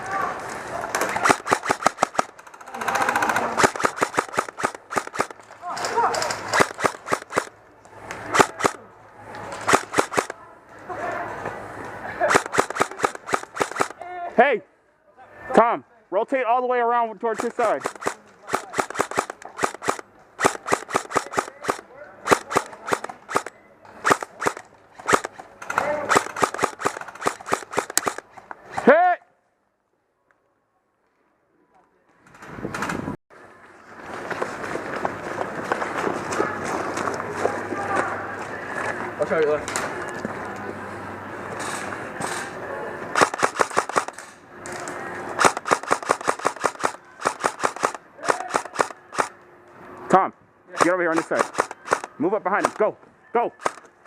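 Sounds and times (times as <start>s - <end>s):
airsoft guns firing: 1.0s - 7.5s, 8.2s - 8.8s, 9.6s - 10.4s, 12.2s - 14.0s, 17.3s - 28.4s, 43.2s - 44.2s, 45.4s - 49.4s, 50.8s - 52.8s, 53.6s - 53.9s.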